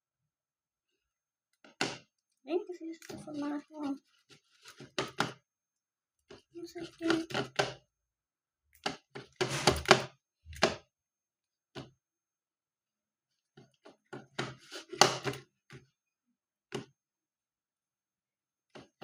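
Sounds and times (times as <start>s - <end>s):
objects knocking on a table: 8.8s - 10.8s.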